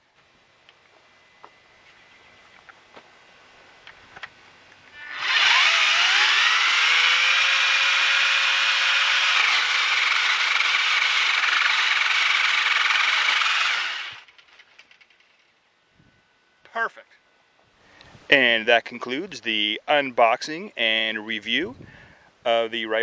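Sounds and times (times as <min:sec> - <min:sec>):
electric pole saw cutting branch: 0:04.2 - 0:14.3.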